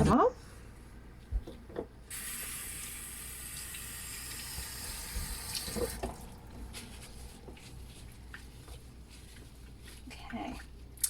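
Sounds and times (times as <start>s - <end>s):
tap water running into sink: 2.1s - 6.3s.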